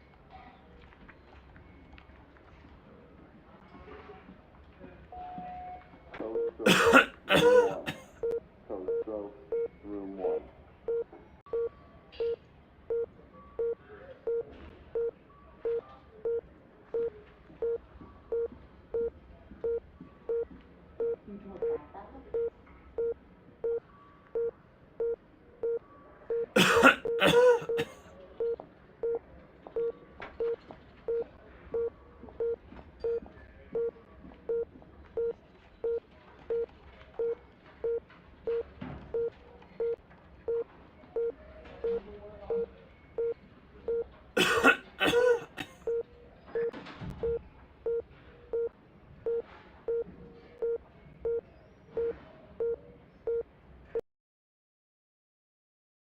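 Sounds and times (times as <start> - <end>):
patient monitor beeping: 6.2 - 29.2, 29.8 - 33.2, 33.8 - 40.6, 41.2 - 48.7
man coughing: 6.6 - 8.1, 26.6 - 28.0, 44.4 - 45.8.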